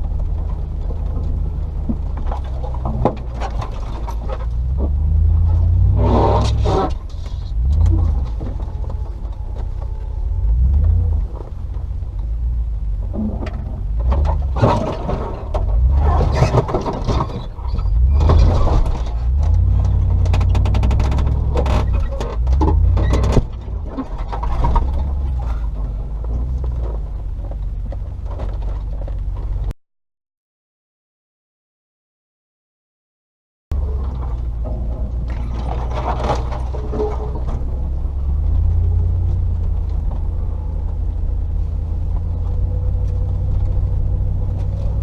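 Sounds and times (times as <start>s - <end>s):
car engine at low revs: 0.0s - 29.7s, 33.7s - 45.0s.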